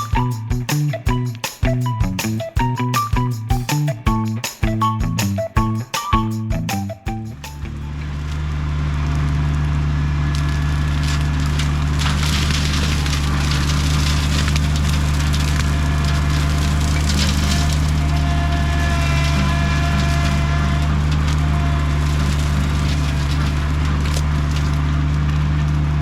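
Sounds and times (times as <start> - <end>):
farm machinery engine running: 0.1 - 26.0
brush crackling and snapping: 10.3 - 19.1, 20.1 - 25.3.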